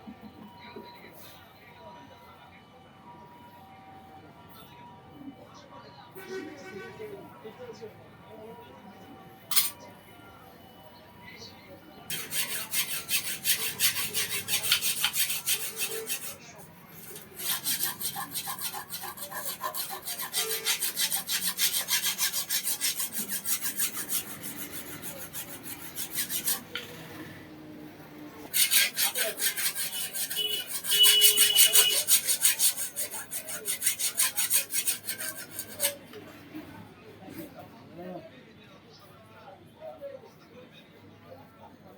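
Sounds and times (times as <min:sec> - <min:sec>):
file rasping on metal blade: 0:09.5 - 0:09.8, 0:12.1 - 0:27.2, 0:28.5 - 0:36.0.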